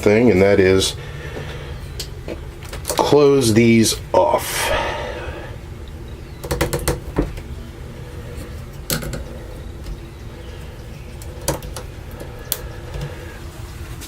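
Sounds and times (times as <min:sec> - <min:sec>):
steady low hum: 0:00.0 - 0:14.0
sharp clicks and knocks: 0:06.4 - 0:07.5, 0:08.4 - 0:13.2.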